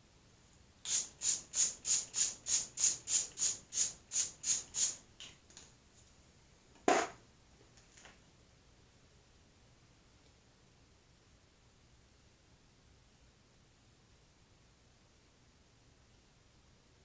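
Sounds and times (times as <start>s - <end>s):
spray bottle spritzing: 0.8s - 5.0s.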